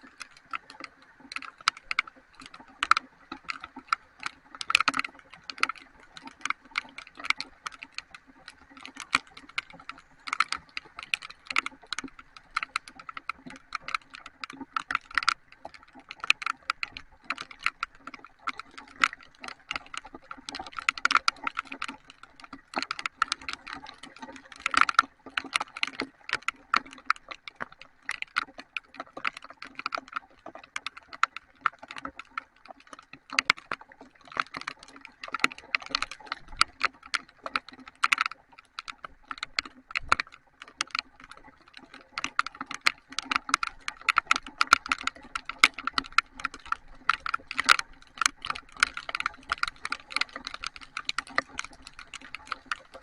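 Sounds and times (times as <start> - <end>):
heavy rain drops tapping: 42.2 - 53.0.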